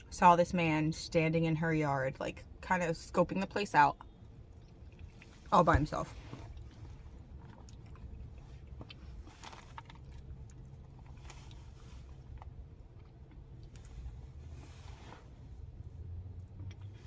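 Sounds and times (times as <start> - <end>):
low steady hum: 0.0 - 17.0
chewing and mouth sounds: 4.0 - 5.5, 6.1 - 14.4, 15.8 - 17.0.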